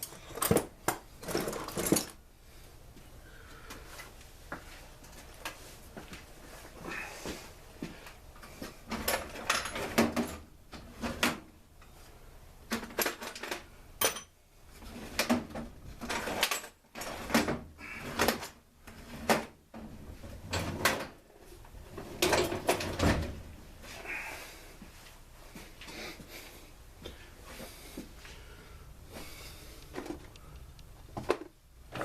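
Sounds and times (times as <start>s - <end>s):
tools and parts clattering: 0.0s - 2.2s, 8.0s - 11.9s, 12.7s - 21.2s, 21.9s - 23.4s.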